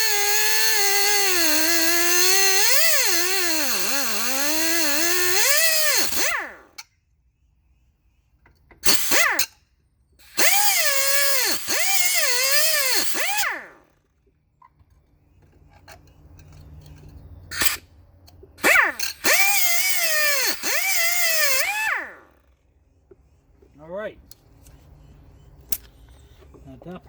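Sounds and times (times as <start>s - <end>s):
power grinder whining on metal: 0.0s - 6.8s, 10.2s - 14.2s, 18.6s - 22.6s.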